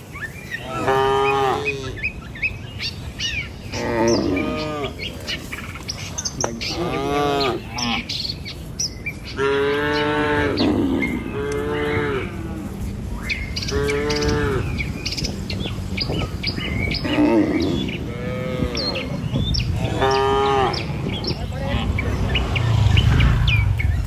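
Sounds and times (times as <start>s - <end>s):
small birds chirping: 0.0s - 24.0s
cattle mooing: 0.6s - 2.1s, 3.7s - 5.3s, 6.6s - 8.1s, 9.4s - 15.0s, 16.1s - 23.7s.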